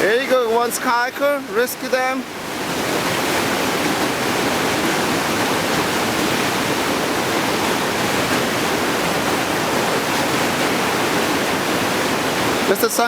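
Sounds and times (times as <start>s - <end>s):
whitewater rushing through rapids: 0.0s - 13.0s.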